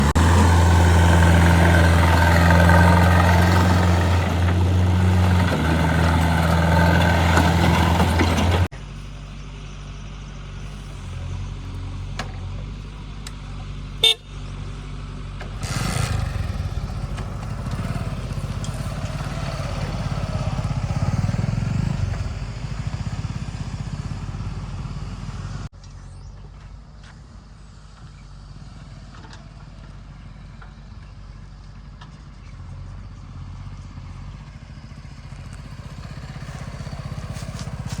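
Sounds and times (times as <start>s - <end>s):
engine running: 0.0s - 38.0s
loud vehicle horn blare: 14.0s - 14.4s.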